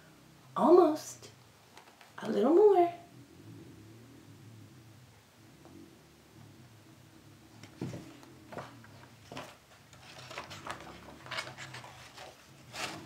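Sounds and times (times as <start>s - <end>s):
paper rustling: 7.7s - 13.0s.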